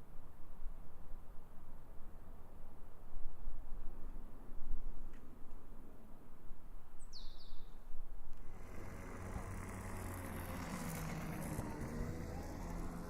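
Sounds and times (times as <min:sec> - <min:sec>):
vehicle engine running: 0:08.4 - 0:13.0.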